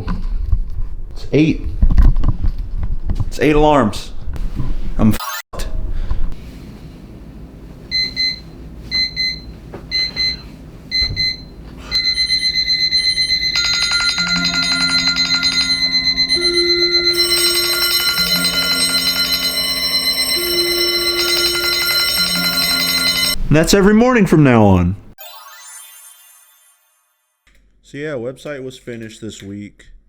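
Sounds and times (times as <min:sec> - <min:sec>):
alarm clock double beeps: 0:11.0 - 0:23.4
steady high alarm tone: 0:11.9 - 0:23.4
low two-note alarm ringing: 0:12.0 - 0:23.4.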